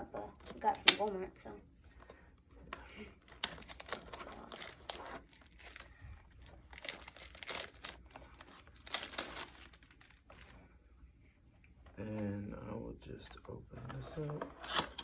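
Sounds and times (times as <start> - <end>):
packaging crinkling and tearing: 2.9 - 10.5.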